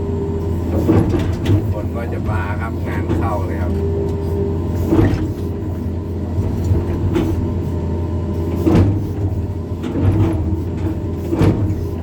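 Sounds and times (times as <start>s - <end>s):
excavator diesel engine running: 0.0s - 12.0s
excavator bucket clunks: 0.6s - 2.3s, 3.0s - 5.6s, 8.6s - 12.0s.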